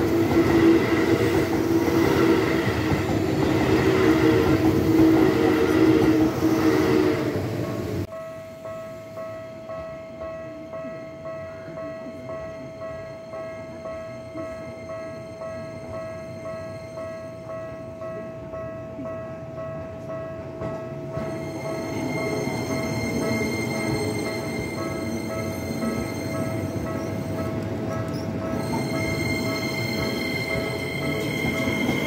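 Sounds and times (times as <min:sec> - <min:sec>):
train rumbling: 0:00.0 - 0:08.1, 0:13.8 - 0:32.0
level crossing alarm bell ringing: 0:07.6 - 0:32.0.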